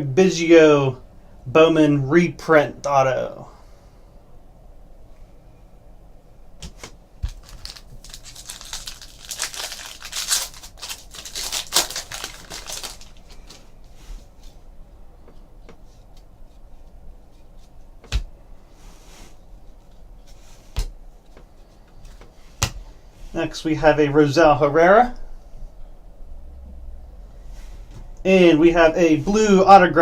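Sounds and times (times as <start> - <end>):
foil wrapper tearing and crinkling: 7.2 - 13.6.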